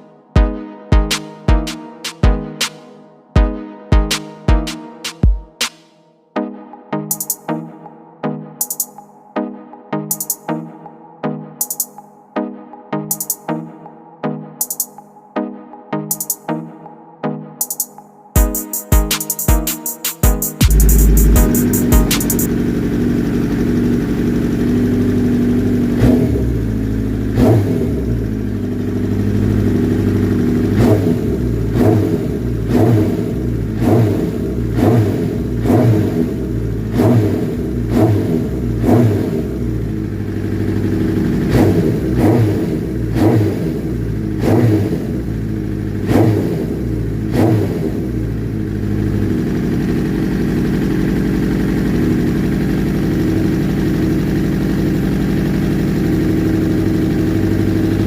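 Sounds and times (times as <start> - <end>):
motorcycle engine revving and idling: 20.6 - 58.0.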